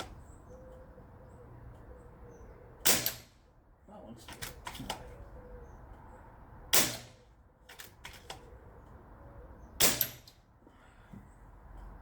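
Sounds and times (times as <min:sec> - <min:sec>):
air rifle shots: 0:02.8 - 0:03.3, 0:06.7 - 0:07.2, 0:09.8 - 0:10.3.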